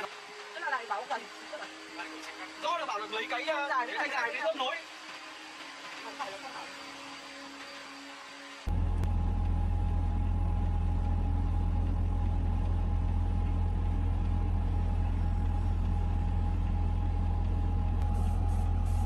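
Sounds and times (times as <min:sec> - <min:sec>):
excavator diesel engine running: 0:08.7 - 0:19.0.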